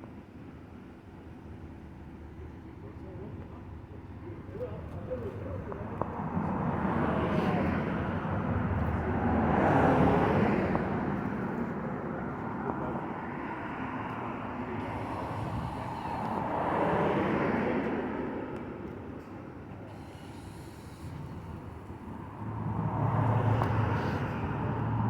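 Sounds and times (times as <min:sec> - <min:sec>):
passing vehicle rushing: 0:22.2 - 0:25.0.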